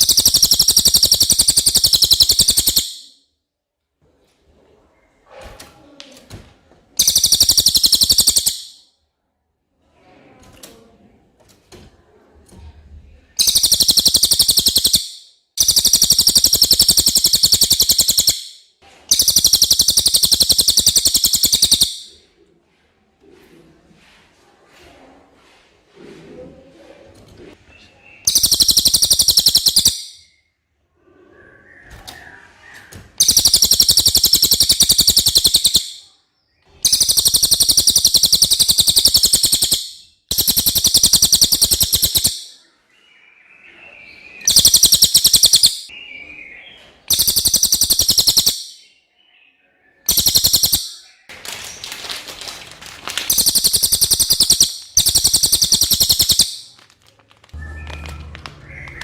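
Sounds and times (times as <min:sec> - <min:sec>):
songbird singing rapid high notes: 0:00.0 - 0:03.0, 0:07.0 - 0:08.8, 0:13.4 - 0:22.1, 0:28.1 - 0:30.2, 0:33.2 - 0:36.0, 0:36.8 - 0:42.6, 0:44.3 - 0:48.9, 0:50.0 - 0:51.1, 0:53.3 - 0:56.7.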